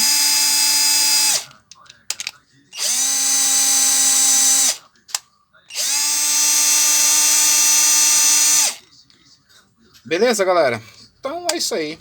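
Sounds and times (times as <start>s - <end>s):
cordless drill motor whine: 0.0s - 1.5s, 2.8s - 4.8s, 5.7s - 8.8s
drill click: 0.0s - 1.5s, 2.1s - 4.8s, 5.7s - 8.8s.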